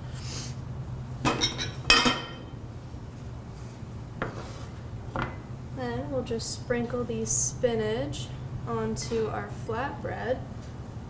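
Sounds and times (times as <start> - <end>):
steady low hum: 0.0 - 11.0
utensils clinking against dishes: 1.3 - 2.5.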